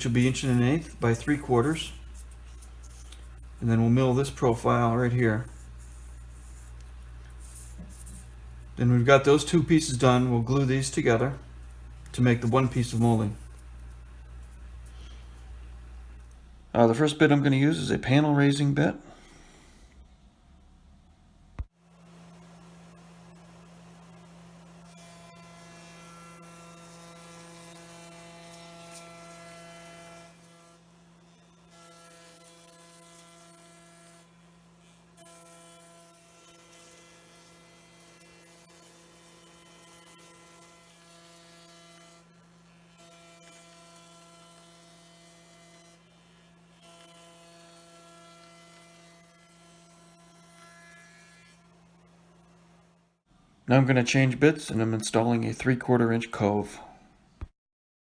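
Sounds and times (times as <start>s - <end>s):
faint electrical hum: 0.0s - 57.5s.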